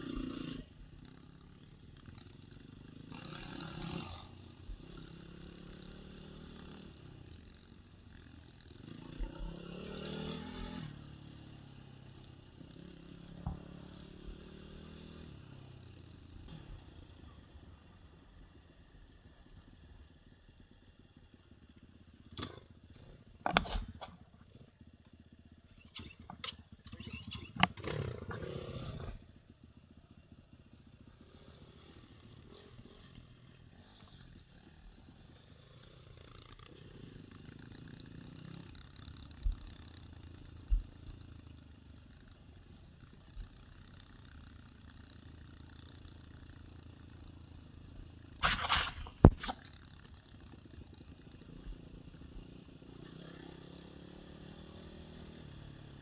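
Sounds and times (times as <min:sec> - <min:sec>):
motorcycle engines rumbling: 0:00.0 - 0:56.0.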